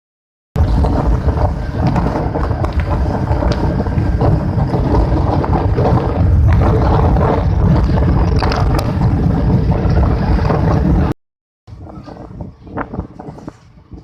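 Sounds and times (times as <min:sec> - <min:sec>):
train rumbling: 0:00.6 - 0:11.1.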